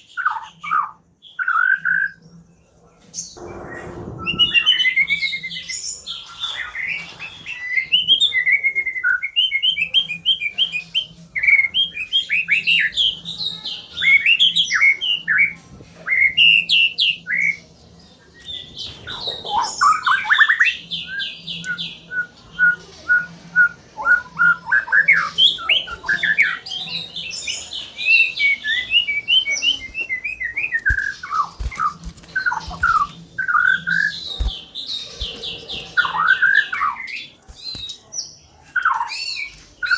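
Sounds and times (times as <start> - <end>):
bird singing whistled phrases: 3.6 - 13.1, 19.5 - 26.6, 28.0 - 34.5.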